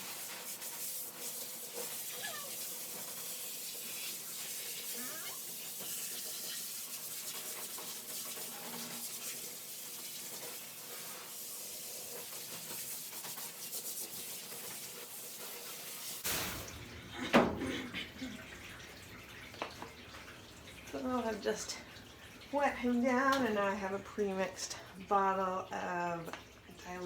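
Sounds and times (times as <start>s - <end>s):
water spraying on dog coat: 0.0s - 19.4s.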